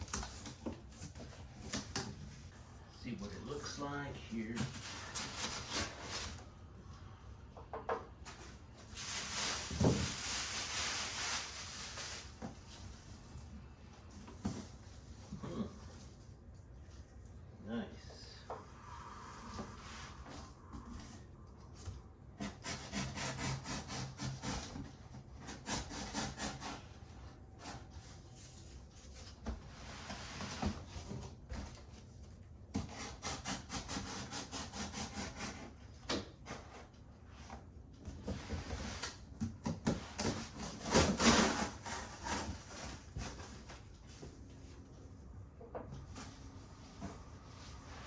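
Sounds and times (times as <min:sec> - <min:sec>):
packaging rubbing and scraping: 0:40.1 - 0:43.7.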